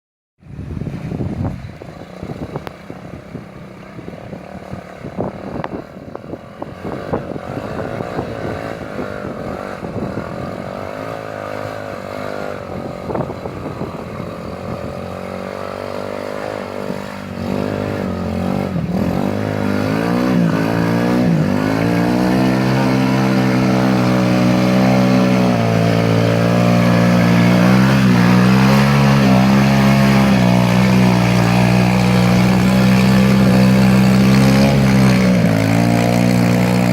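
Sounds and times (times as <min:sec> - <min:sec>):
atv engine revving: 0:00.6 - 0:36.9.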